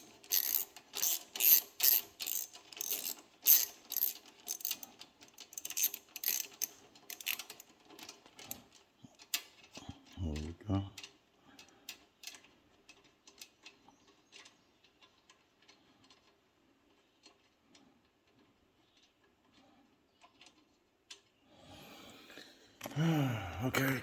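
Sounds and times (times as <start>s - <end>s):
tools clicking and tapping: 0.0s - 8.6s.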